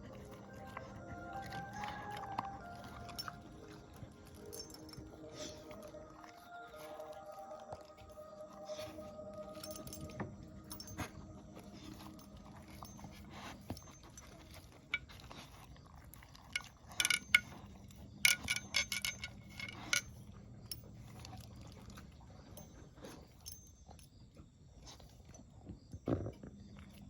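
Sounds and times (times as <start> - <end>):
dry pet food clinking in bowl: 1.4 - 5.1, 9.6 - 11.1, 16.3 - 21.2.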